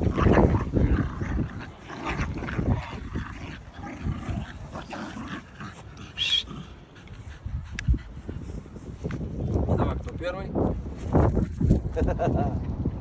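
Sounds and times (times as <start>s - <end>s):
wind buffeting microphone: 0.0s - 13.0s
dog yelping: 6.2s - 6.5s.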